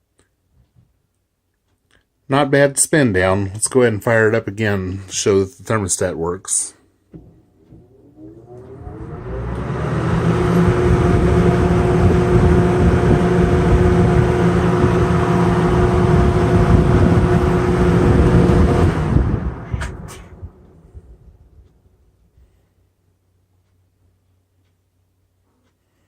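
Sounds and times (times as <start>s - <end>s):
box fan running: 7.1s - 22.7s.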